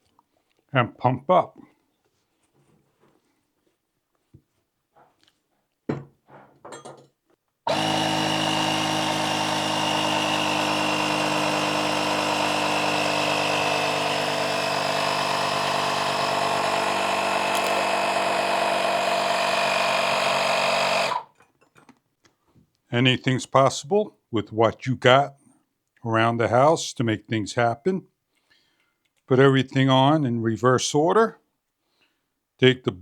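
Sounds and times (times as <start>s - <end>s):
tyre inflator motor running: 7.7s - 21.3s.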